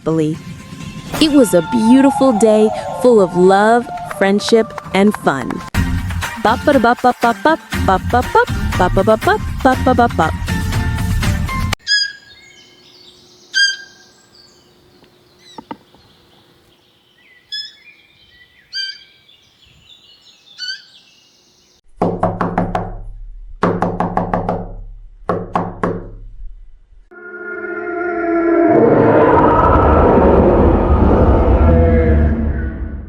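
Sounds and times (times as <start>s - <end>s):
bird-like chirps: 11.8s - 21.8s.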